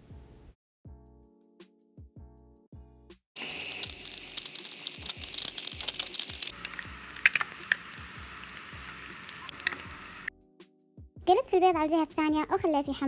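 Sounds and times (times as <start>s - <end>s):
eggs sizzling in a pan: 3.4s - 10.3s
sharp oil pops: 3.4s - 10.3s.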